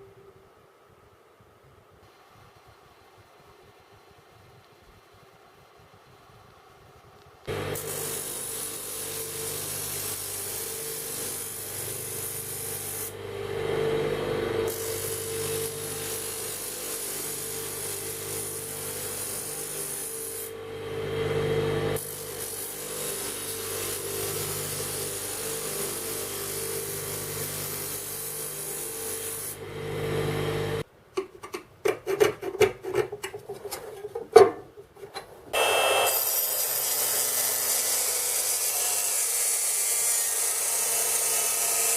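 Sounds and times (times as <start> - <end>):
electric power tool running: 7.5 - 30.8, 35.6 - 39.2
power tool with high whine: 7.5 - 30.8, 35.5 - 41.9
knocks and scrapes: 31.2 - 35.5.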